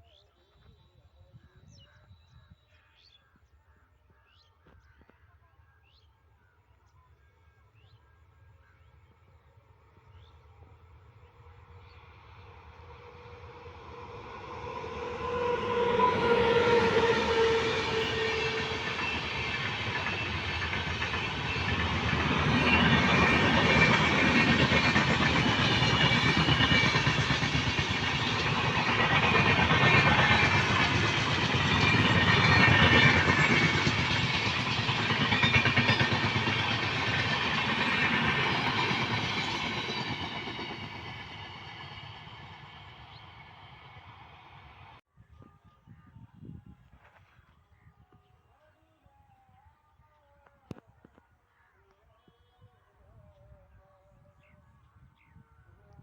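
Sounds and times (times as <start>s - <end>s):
train horn: 14.2s - 20.4s
train wheels clattering: 14.6s - 42.9s.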